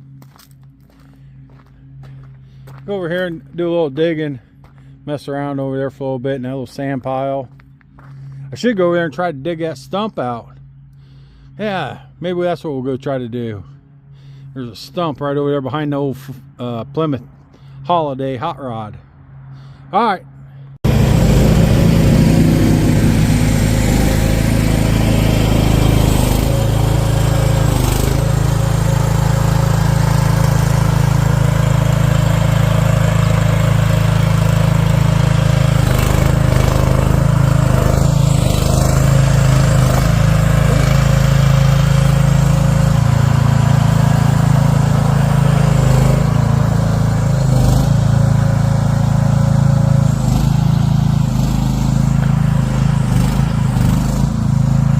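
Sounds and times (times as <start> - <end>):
mini excavator engine running: 20.9 - 54.9.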